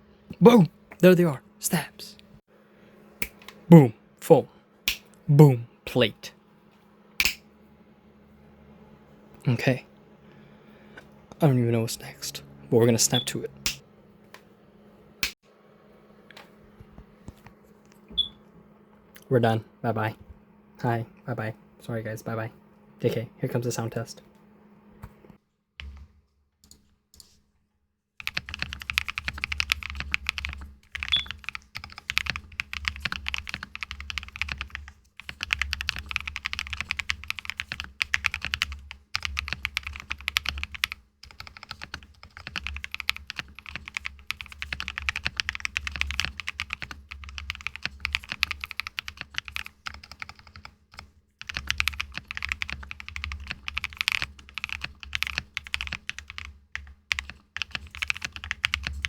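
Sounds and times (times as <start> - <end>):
mechanical keyboard typing: 28.2 - 59.0.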